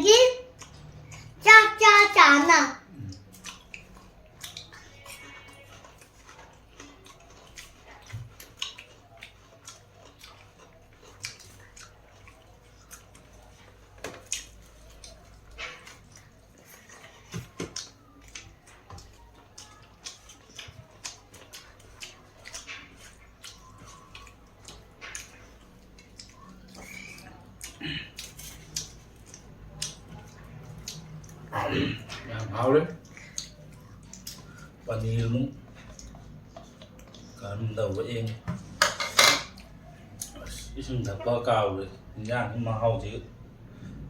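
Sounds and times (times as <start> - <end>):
chewing: 0.5 - 1.4, 2.8 - 38.4, 39.5 - 41.3
dishes clicking and tapping: 38.4 - 39.6.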